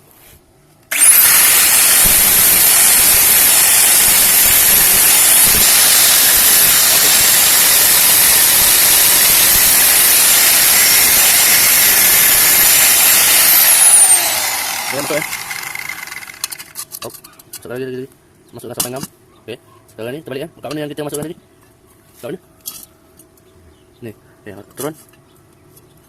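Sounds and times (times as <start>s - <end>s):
cutting disc grinding steel: 0.9s - 16.8s.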